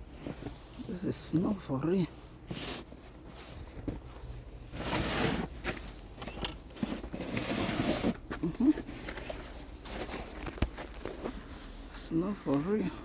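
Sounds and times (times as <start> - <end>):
footsteps crunching through snow: 6.8 - 12.0.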